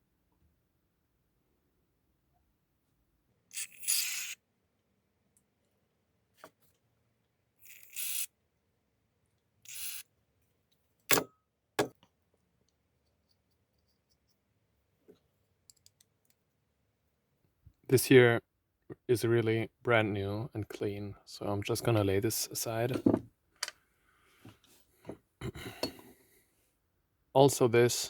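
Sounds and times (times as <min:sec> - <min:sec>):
parts knocking on bench: 0:22.9 - 0:23.3.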